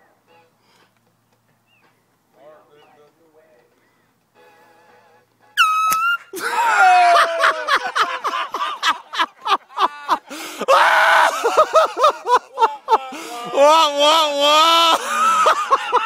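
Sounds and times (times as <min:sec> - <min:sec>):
people yelling: 0:05.6 - 0:16.0
people laughing: 0:06.3 - 0:16.0.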